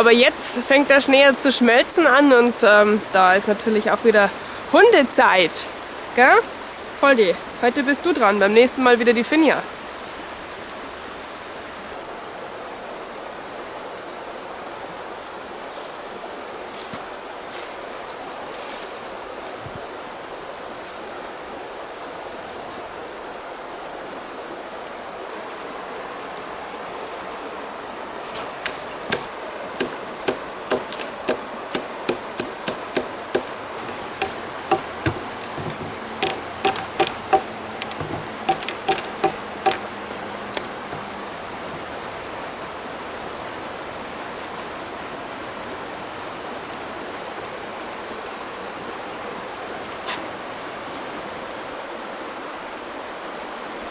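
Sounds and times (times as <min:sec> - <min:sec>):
river flowing: 0:25.2 - 0:42.9
wood being chopped: 0:28.3 - 0:41.2.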